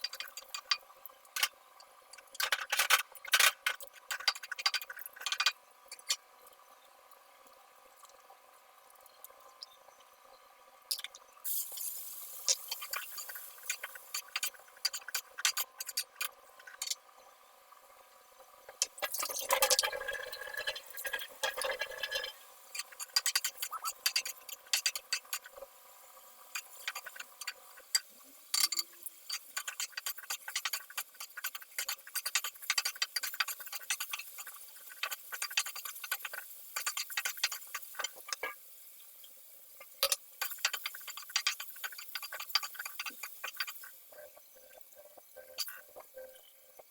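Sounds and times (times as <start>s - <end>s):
food sizzling in a frying pan: 11.0s - 17.0s, 18.8s - 46.5s.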